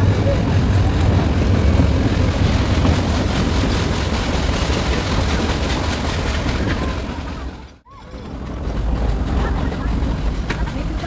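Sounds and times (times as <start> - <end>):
train wheels rumbling on track: 0.0 - 11.0.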